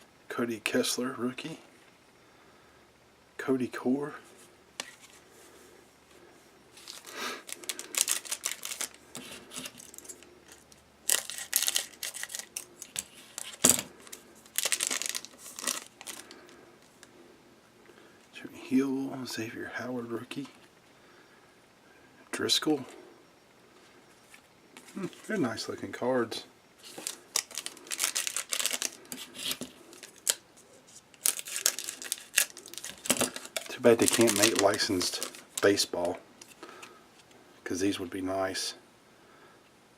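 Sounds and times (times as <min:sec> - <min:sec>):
trading cards clicking and rustling: 0:06.8 - 0:16.4, 0:26.8 - 0:30.4, 0:31.2 - 0:36.8
foil wrapper crinkling: 0:06.8 - 0:17.0, 0:26.8 - 0:36.9.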